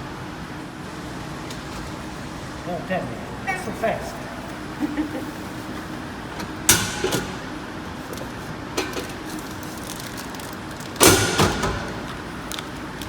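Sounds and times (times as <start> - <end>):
vending machine flap clattering: 6.3 - 7.5, 8.7 - 12.8.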